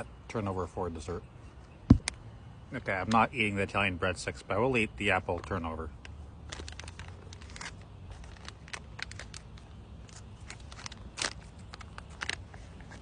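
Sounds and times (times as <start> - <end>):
plastic wrapper crinkling: 6.4 - 13.0.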